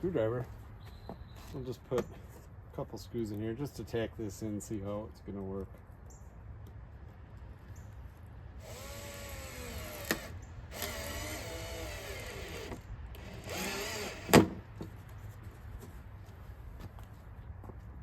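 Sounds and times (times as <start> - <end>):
power screwdriver driving screws: 8.6 - 14.6.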